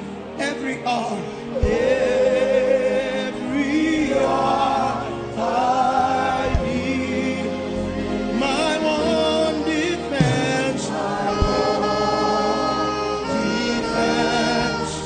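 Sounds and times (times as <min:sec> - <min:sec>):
low musical accompaniment: 0:00.0 - 0:15.0
voices singing held notes: 0:01.3 - 0:15.0
short low thump: 0:10.2 - 0:10.8.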